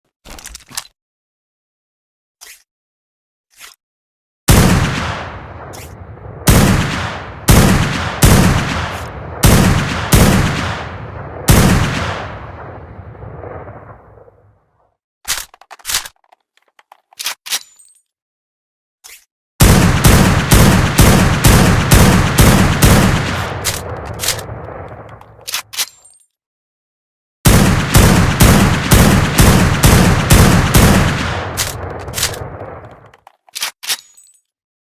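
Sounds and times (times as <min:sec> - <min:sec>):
sniper rifle shots with echo: 0:04.5 - 0:05.7, 0:06.4 - 0:14.2, 0:19.6 - 0:25.2, 0:27.5 - 0:32.9.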